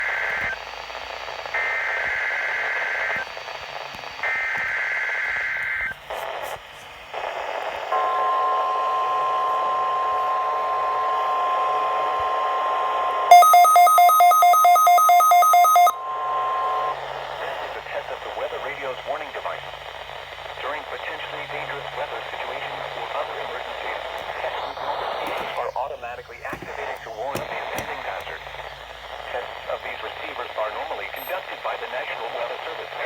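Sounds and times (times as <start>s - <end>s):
radio reception hiss: 0.0s - 33.0s
steady warning alarm tone: 7.9s - 17.0s
rapid electronic alert beeping: 13.3s - 16.0s
warbling digital header tones: 13.3s - 16.0s.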